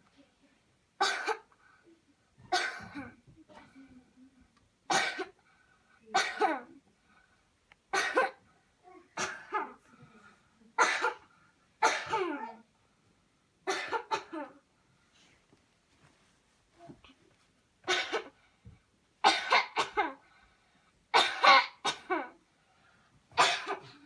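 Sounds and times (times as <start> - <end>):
person coughing deeply: 10.8 - 12.5, 19.2 - 20.2, 21.2 - 22.4, 23.4 - 24.0.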